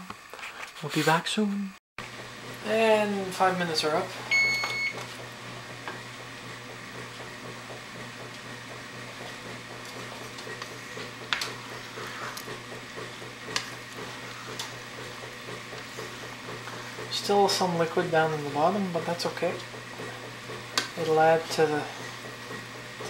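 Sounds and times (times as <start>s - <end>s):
short electronic beep: 4.3s - 5.0s.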